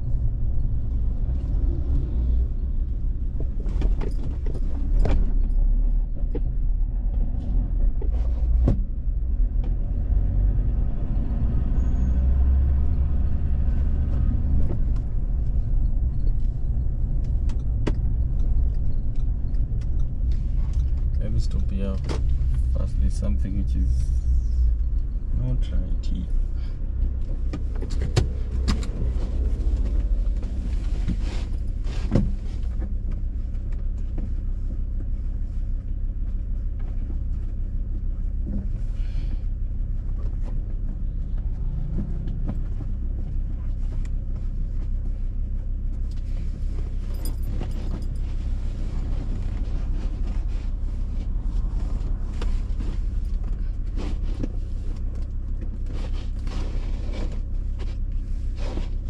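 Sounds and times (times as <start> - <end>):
vehicle engine humming: 0.0 - 59.0
sharp clicks and knocks: 14.6 - 22.7.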